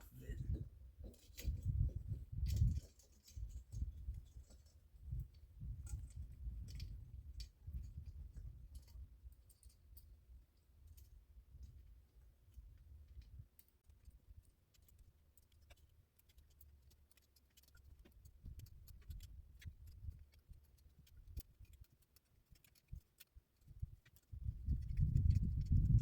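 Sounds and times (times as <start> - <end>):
clicks and metallic ticks: 14.7 - 26.0.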